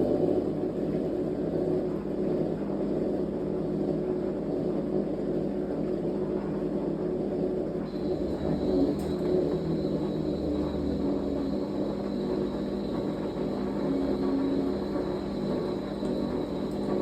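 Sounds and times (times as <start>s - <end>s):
washing machine whirring hum: 0.0s - 17.0s
high thin whine: 7.9s - 17.0s.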